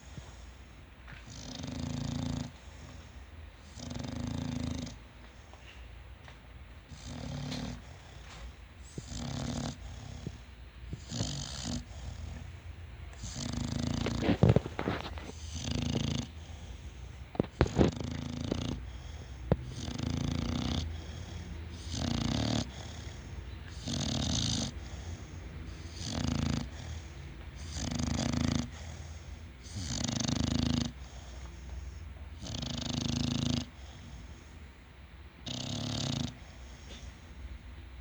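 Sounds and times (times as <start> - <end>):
person snoring: 13.2 - 16.3, 17.6 - 23.2, 25.8 - 26.9.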